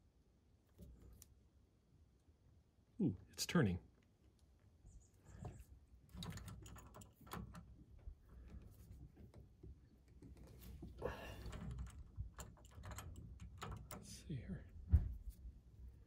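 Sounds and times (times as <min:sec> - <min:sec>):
pipe wrench clicking and knocking: 0:11.4 - 0:14.1.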